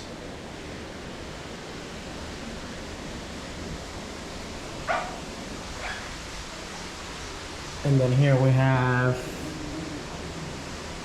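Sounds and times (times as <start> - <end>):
outdoor ambient hiss: 0.0 - 11.0.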